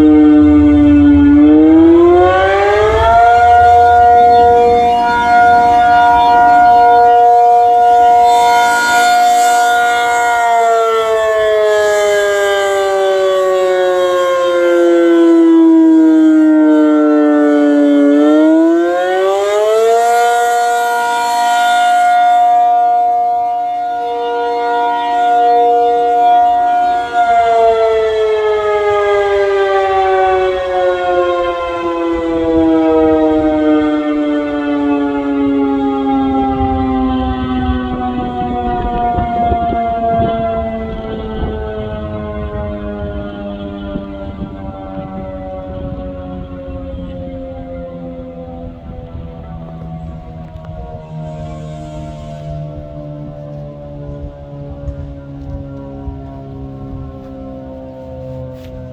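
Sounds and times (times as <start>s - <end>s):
tornado siren rising and falling: 0.0s - 58.9s.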